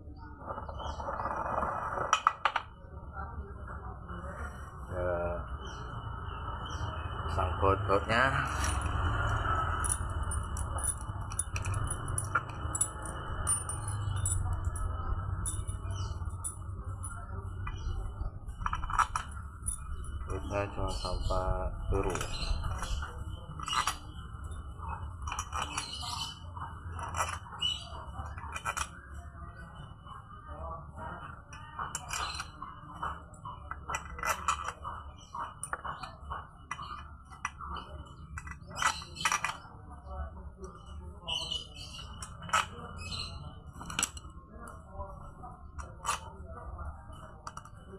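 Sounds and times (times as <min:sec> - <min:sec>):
metal bolts and tools clinking: 0:08.3 - 0:18.0, 0:18.6 - 0:21.0, 0:22.0 - 0:29.0, 0:31.5 - 0:39.7, 0:41.4 - 0:44.3.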